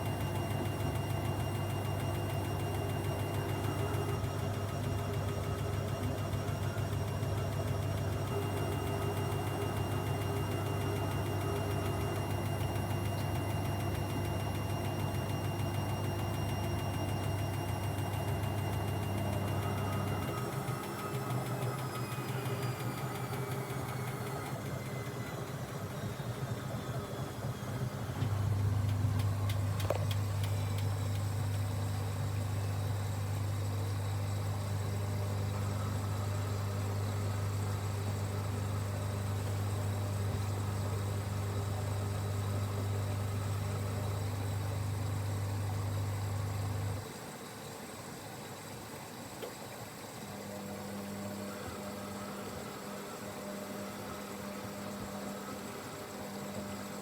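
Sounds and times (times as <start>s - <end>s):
washing machine motor hum: 0.0s - 57.0s.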